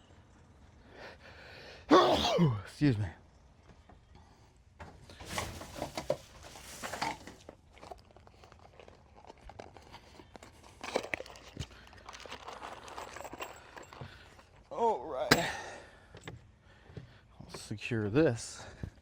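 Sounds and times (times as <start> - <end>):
bag crinkling and rustling: 5.1 - 14.6.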